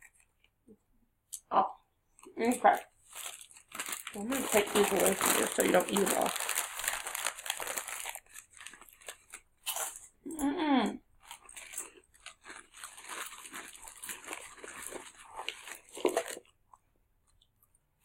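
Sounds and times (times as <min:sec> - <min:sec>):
plastic wrapper crinkling: 0:02.1 - 0:10.1, 0:11.2 - 0:16.6.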